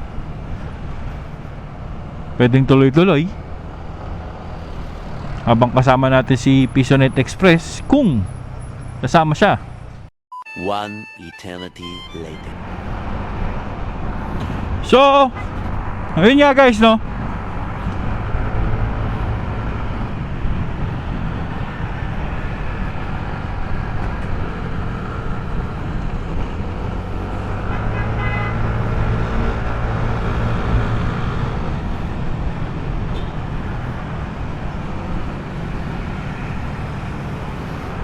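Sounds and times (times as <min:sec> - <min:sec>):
scooter engine: 0:03.3 - 0:06.4, 0:17.1 - 0:38.0
horn-like tone: 0:10.3 - 0:12.6
wind rumble: 0:17.0 - 0:27.9.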